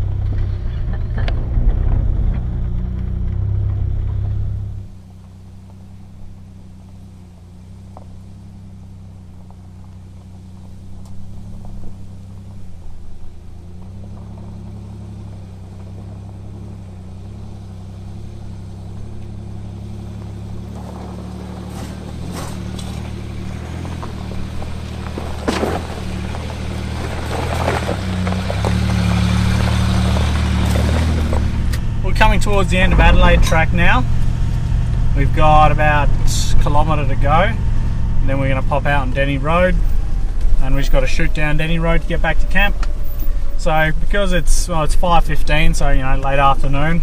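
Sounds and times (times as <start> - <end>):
diesel engine running at low speed: 0.0 - 47.0
sharp knocks and rattles: 13.4 - 36.8.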